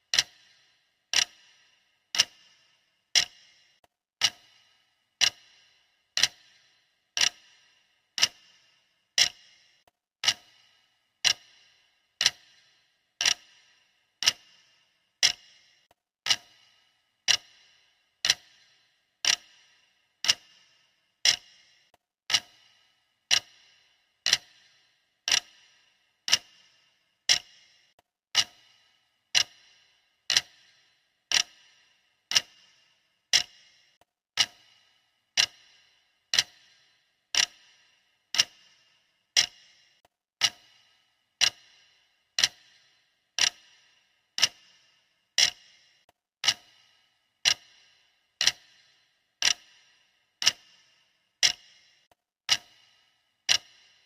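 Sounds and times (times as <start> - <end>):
clock ticks with short ring: 0.0 - 54.0.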